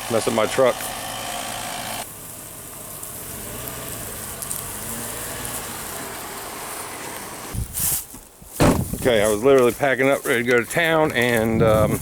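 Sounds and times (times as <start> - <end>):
truck engine idling: 0.0 - 7.7.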